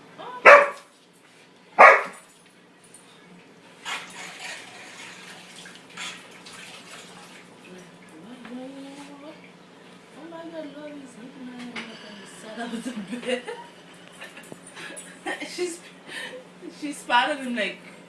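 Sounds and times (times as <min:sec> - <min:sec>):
dog barking: 0:00.4 - 0:00.9, 0:01.8 - 0:02.2.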